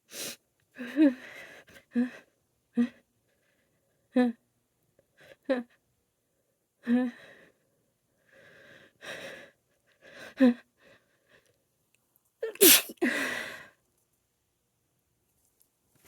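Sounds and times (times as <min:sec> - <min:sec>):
woman sneezing: 0:12.5 - 0:13.1.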